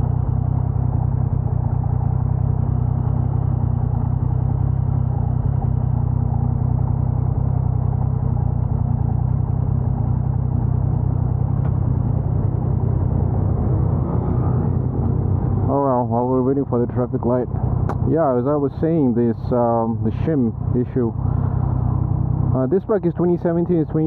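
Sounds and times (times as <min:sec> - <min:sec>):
motorcycle engine running: 0:00.0 - 0:24.0
man talking: 0:15.7 - 0:21.2, 0:22.5 - 0:24.0.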